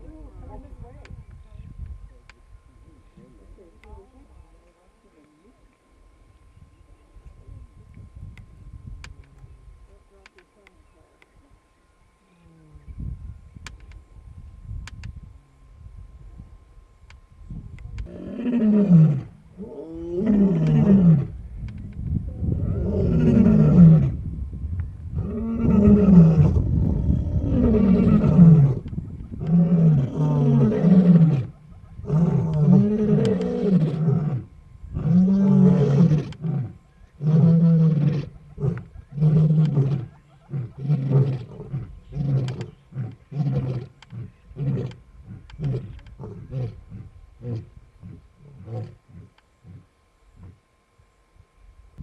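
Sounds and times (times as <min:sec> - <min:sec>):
lion roaring: 0:18.0 - 0:21.4, 0:22.3 - 0:24.2, 0:25.2 - 0:28.8, 0:29.4 - 0:50.6
lion grunting: 0:29.4 - 0:50.6.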